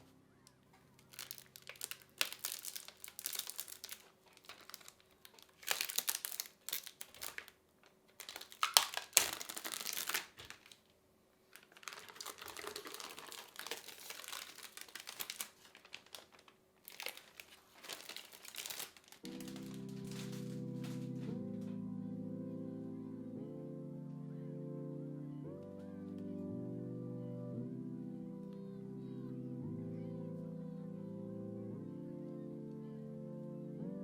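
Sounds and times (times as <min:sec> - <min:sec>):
plastic wrapping crinkling: 0:00.8 - 0:21.6.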